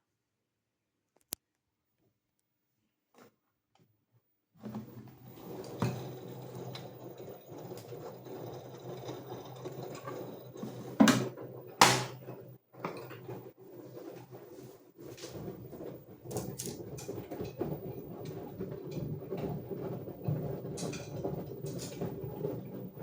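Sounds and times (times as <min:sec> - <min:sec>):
washing machine running: 0:04.6 - 0:23.0
sharp knocks: 0:11.8 - 0:12.2.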